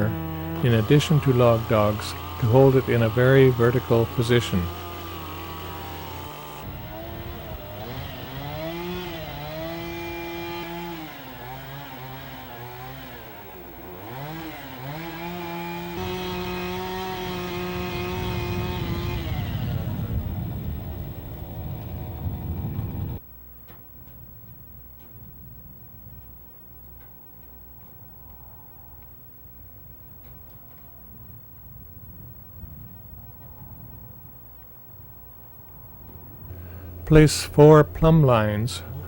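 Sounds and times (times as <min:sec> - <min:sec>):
chainsaw running under load: 0:00.0 - 0:23.2, 0:36.5 - 0:39.0.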